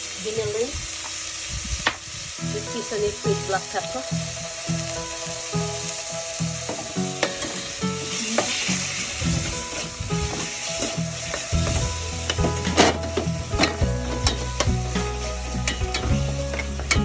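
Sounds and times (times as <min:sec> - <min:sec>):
meat sizzling in a pan: 0:00.0 - 0:17.0
utensil scraping a pan: 0:06.6 - 0:17.0.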